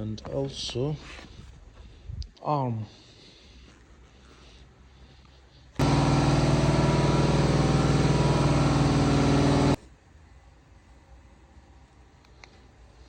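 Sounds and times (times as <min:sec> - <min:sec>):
car engine running: 0:05.8 - 0:09.8.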